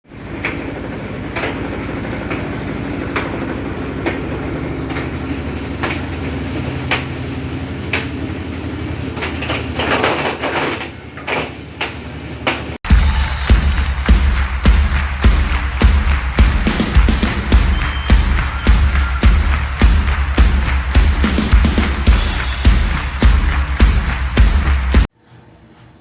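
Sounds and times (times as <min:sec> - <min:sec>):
washing machine spinning: 0:00.0 - 0:26.0
rattling and banging: 0:00.2 - 0:25.1
sharp knocking: 0:00.4 - 0:07.3, 0:07.9 - 0:08.3.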